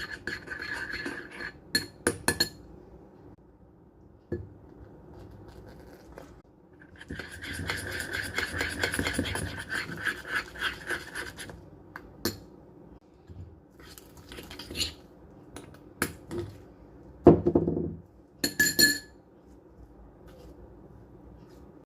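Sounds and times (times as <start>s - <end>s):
utensil scraping against dish: 0.0s - 1.6s, 6.9s - 11.5s.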